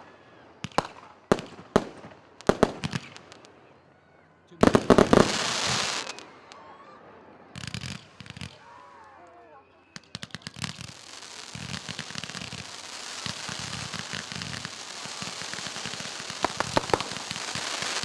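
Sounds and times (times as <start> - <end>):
firework bangs: 0.6 - 3.5, 4.6 - 6.6, 7.5 - 8.8, 9.9 - 18.0
firework crackling: 0.6 - 3.5, 4.6 - 6.6, 7.5 - 9.1, 9.9 - 18.0.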